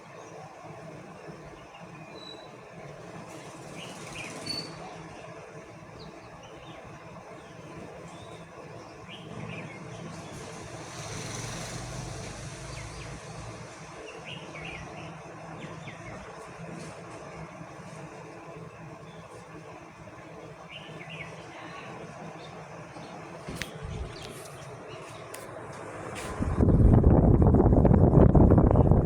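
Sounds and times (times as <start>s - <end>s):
ceiling fan whoosh and hum: 0.0s - 29.0s
small birds chirping: 3.3s - 16.4s, 20.6s - 25.4s.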